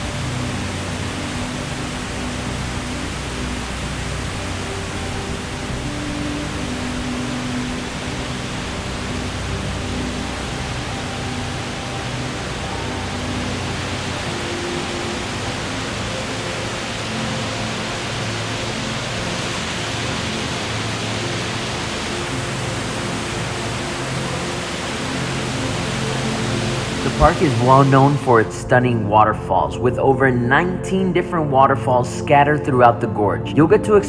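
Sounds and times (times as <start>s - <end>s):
soft background music: 0.0s - 34.0s
waterfall rushing: 0.0s - 34.0s.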